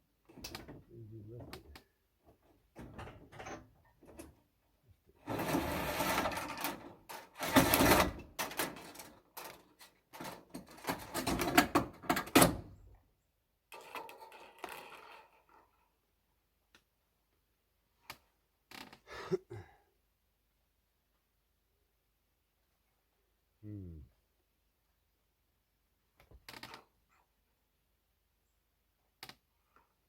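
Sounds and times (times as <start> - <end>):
rattling and scraping handling noise: 0.3 - 12.9, 13.7 - 16.0.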